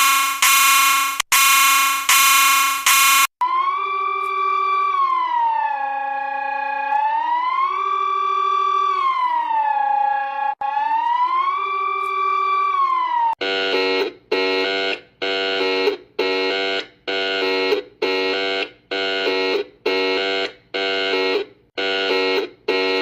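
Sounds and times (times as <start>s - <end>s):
pulsing multi-tone alarm: 0.0s - 4.4s, 10.6s - 23.0s
wailing electronic siren: 0.0s - 23.0s.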